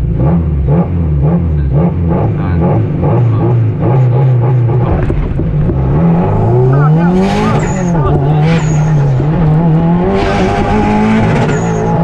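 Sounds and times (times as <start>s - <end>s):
rally car engine revving: 0.0s - 12.0s.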